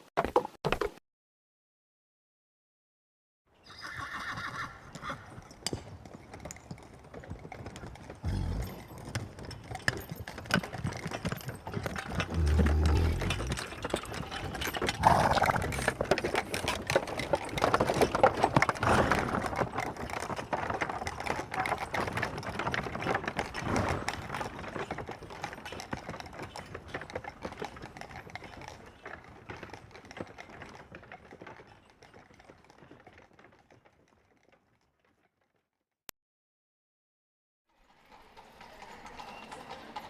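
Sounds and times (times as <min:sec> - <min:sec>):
horse hooves clopping: 0:00.0 - 0:01.0, 0:03.7 - 0:35.5, 0:38.0 - 0:40.0.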